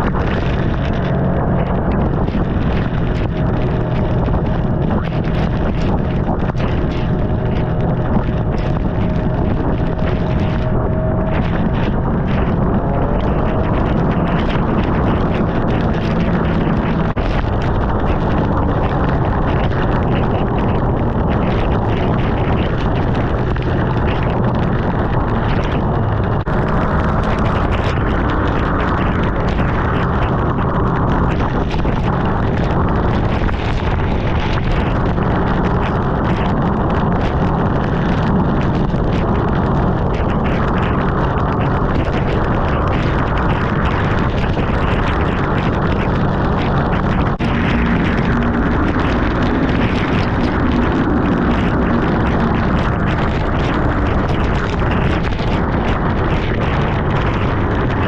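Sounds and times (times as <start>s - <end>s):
motorcycle engine drone: 0.0s - 58.0s
wind buffeting microphone: 0.0s - 58.0s.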